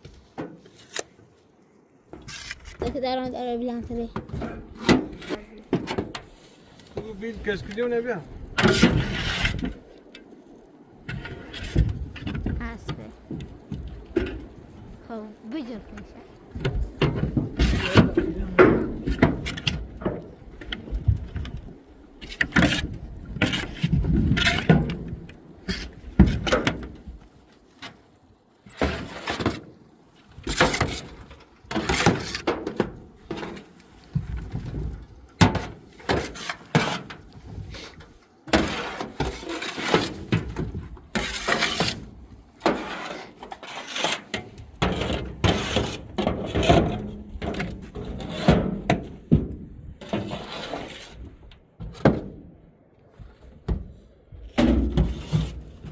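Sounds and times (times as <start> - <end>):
shovel scraping on floor: 38.5 - 40.2, 41.2 - 42.0, 42.6 - 46.0, 50.0 - 51.2.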